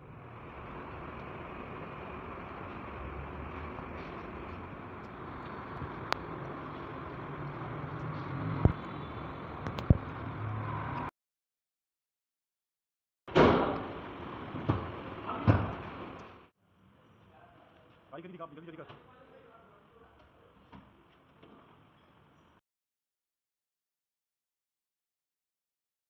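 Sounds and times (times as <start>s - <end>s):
outdoor background noise: 0.0s - 11.1s, 13.3s - 22.6s.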